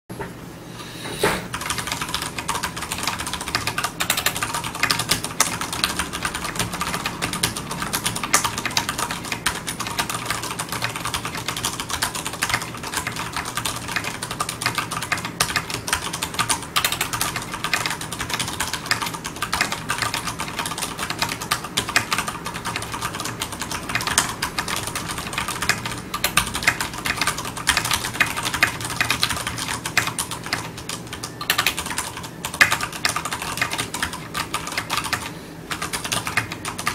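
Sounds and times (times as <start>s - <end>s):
mechanical keyboard typing: 1.5s - 36.9s.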